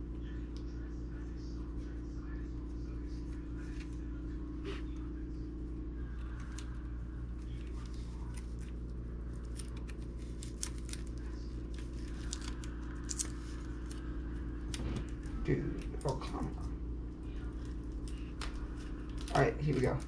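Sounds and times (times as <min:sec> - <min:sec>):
low electrical hum: 0:00.0 - 0:20.0
hands handling plastic packaging: 0:07.4 - 0:14.1.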